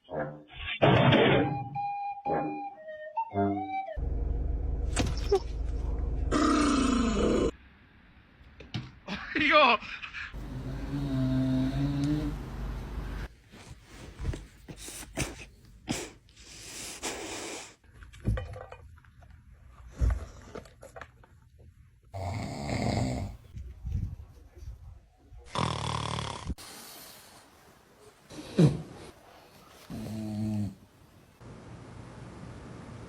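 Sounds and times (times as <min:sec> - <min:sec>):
dog snoring: 0:10.6 - 0:12.4.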